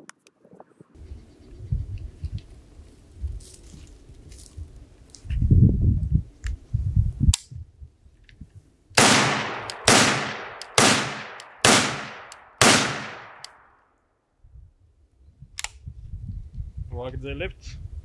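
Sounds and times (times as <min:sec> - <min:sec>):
rifle shots with echo: 0:09.0 - 0:13.7.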